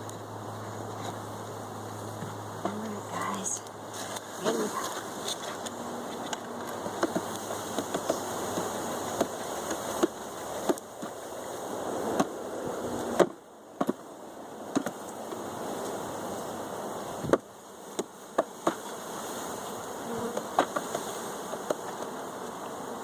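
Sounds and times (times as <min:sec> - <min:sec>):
bees buzzing: 0:00.1 - 0:23.0.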